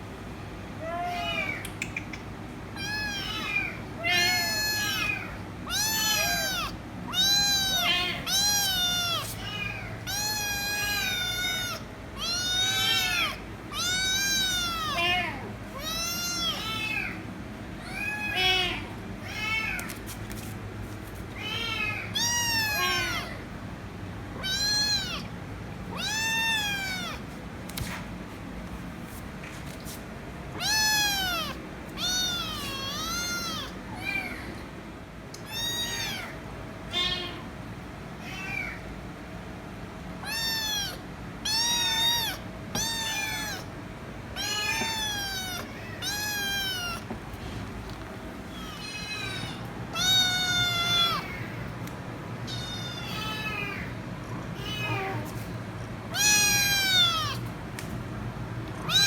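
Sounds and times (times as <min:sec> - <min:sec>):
kitten meowing loudly: 0:02.8 - 0:17.2, 0:21.4 - 0:23.3, 0:24.4 - 0:25.3, 0:25.9 - 0:27.2, 0:30.6 - 0:34.4, 0:35.5 - 0:36.3, 0:40.2 - 0:43.7, 0:44.4 - 0:47.1, 0:48.6 - 0:51.6, 0:56.1 - 0:57.4.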